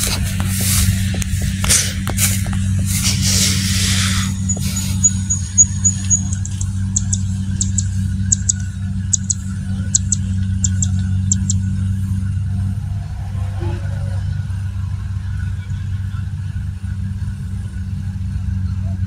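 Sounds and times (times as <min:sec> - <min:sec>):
loud rushing hiss: 0:00.0 - 0:05.3
diesel engine humming: 0:00.0 - 0:19.0.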